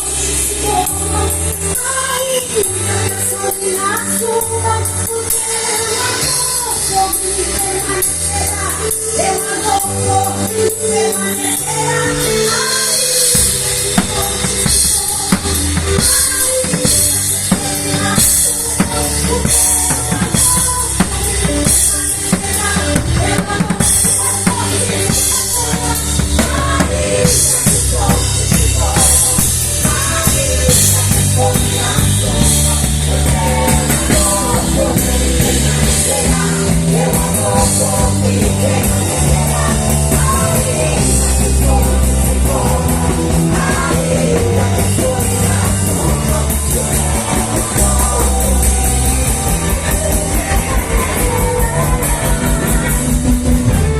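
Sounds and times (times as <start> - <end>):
bass guitar: 0.0 - 53.9
drum kit: 0.0 - 53.9
gospel band playing: 0.0 - 53.9.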